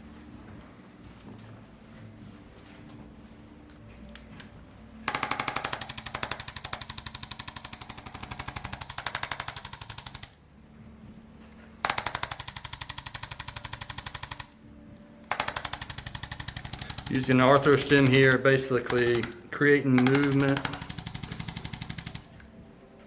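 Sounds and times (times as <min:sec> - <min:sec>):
adjusting instrument rapid tapping: 0:05.1 - 0:10.3, 0:15.3 - 0:19.4, 0:20.0 - 0:22.3.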